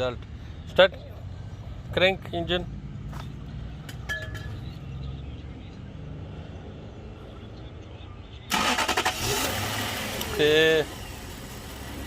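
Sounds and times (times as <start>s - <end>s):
car engine cranking and starting: 8.5s - 12.0s.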